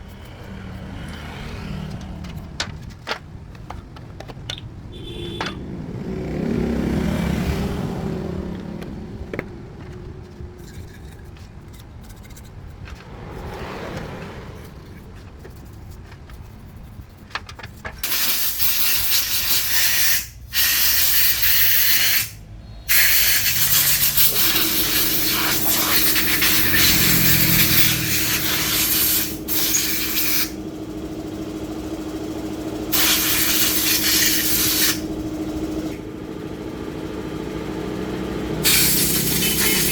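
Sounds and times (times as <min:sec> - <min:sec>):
compressed air hissing: 0:18.0 - 0:31.1, 0:32.8 - 0:36.0, 0:38.6 - 0:39.9
steady hum: 0:24.2 - 0:39.9.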